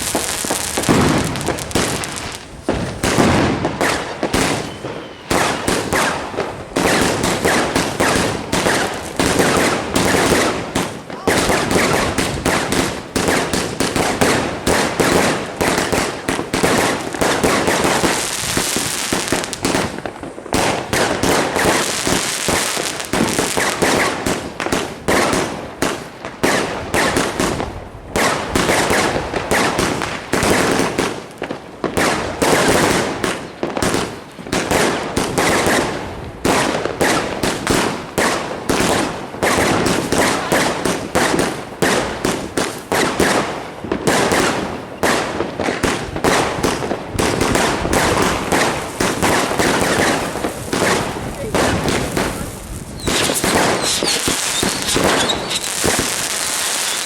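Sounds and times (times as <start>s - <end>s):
high firework hiss: 0.0s - 24.2s, 46.4s - 57.0s
fireworks bangs and crackling: 0.0s - 57.0s.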